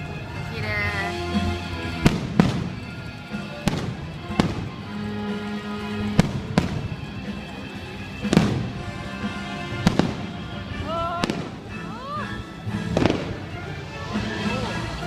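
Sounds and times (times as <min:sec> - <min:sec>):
music: 0:00.0 - 0:15.0
fireworks bangs: 0:01.9 - 0:05.2, 0:05.9 - 0:07.1, 0:08.2 - 0:11.7, 0:12.8 - 0:14.5.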